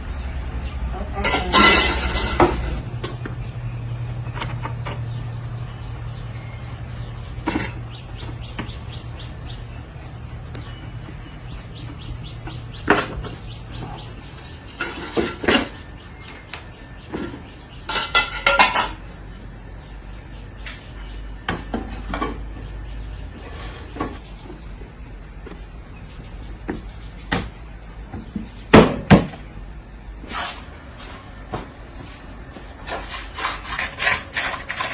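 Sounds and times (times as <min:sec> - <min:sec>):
metal parts and tools clinking: 0:01.2 - 0:03.2.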